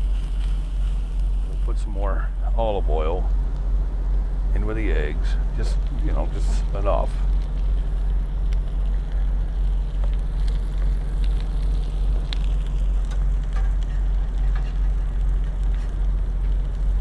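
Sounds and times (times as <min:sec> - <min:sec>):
food sizzling on a griddle: 0:00.0 - 0:01.5, 0:06.7 - 0:17.0
constant low rumble: 0:00.0 - 0:17.0.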